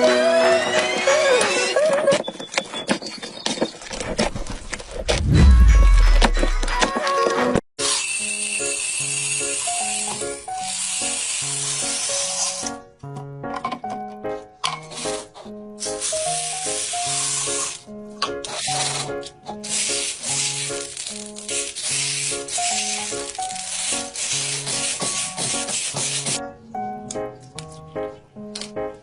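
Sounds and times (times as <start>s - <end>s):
slime being rubbed by hand: 19.7s - 26.4s.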